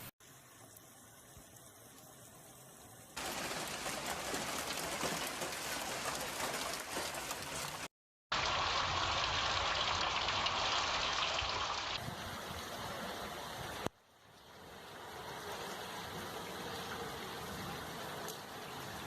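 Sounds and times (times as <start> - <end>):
rushing floodwater: 3.2 - 10.5.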